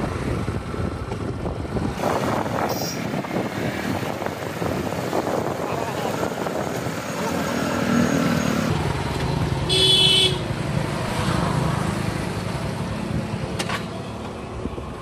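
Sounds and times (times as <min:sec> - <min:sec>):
motorcycle engine and road rumble: 0:00.0 - 0:15.0
vehicle horn beep: 0:09.7 - 0:10.4.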